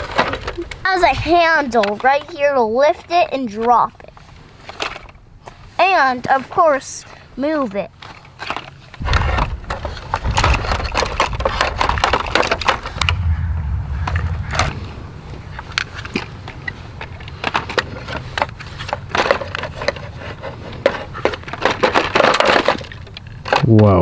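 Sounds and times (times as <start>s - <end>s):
low rumble: 12.9s - 17.2s.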